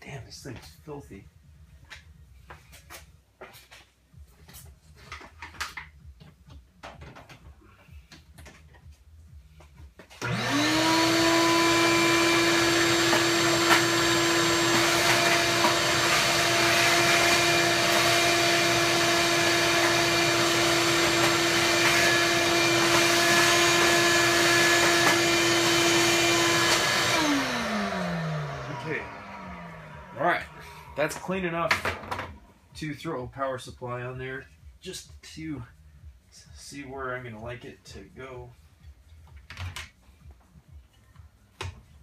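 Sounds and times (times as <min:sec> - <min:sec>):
vacuum cleaner whine: 0:10.1 - 0:31.3.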